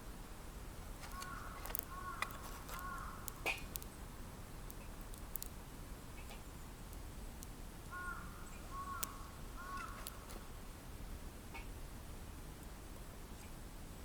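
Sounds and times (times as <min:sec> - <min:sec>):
wood fire crackling: 0:00.3 - 0:11.5
bird calling: 0:01.0 - 0:03.6, 0:07.9 - 0:10.4.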